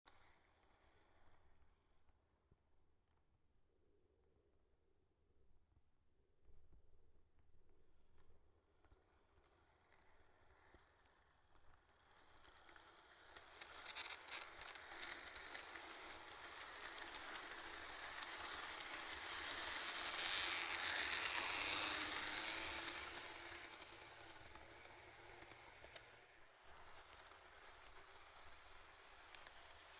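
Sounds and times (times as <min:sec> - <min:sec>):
model train rattling on track: 0:12.4 - 0:29.9.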